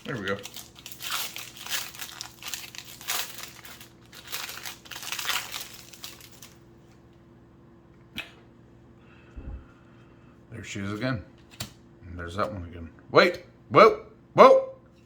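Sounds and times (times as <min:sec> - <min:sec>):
foil wrapper crinkling: 0:00.0 - 0:06.7.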